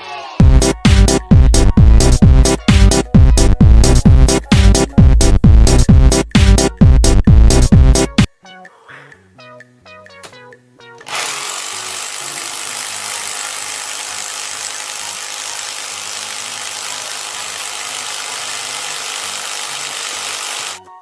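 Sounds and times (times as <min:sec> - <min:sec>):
power tool running: 0:11.0 - 0:20.8.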